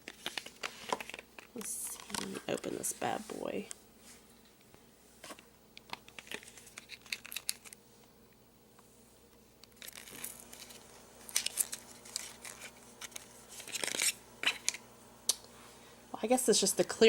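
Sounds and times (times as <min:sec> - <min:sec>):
plastic packaging crinkling: 0:00.0 - 0:03.0, 0:05.9 - 0:07.8, 0:09.7 - 0:14.8.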